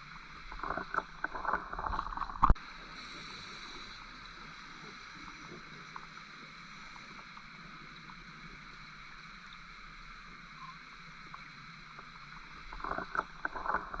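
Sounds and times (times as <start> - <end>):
steady underwater hiss: 0.0 - 14.0
diver's regulator bubbles: 0.5 - 2.6, 12.7 - 14.0
faint ticks: 0.5 - 14.0.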